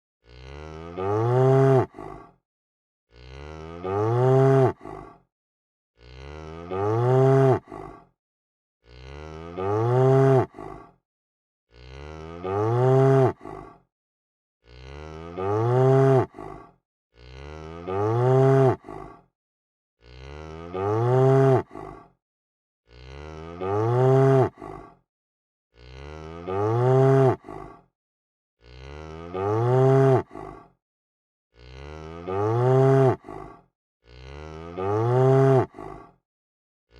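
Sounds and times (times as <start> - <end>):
cow mooing: 0.2 - 2.0, 3.1 - 4.8, 6.0 - 7.7, 8.8 - 10.6, 11.7 - 13.4, 14.6 - 16.4, 17.2 - 18.9, 20.0 - 21.8, 22.9 - 24.6, 25.8 - 27.5, 28.6 - 30.4, 31.6 - 33.3, 34.1 - 35.8.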